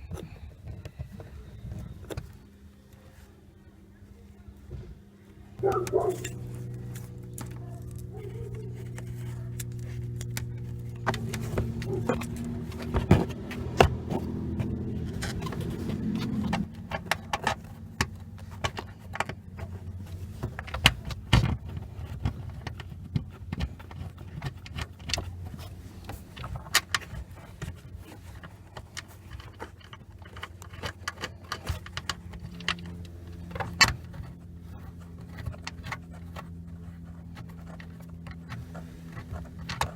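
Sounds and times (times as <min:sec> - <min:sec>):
low hum: 0:05.4 - 0:23.2.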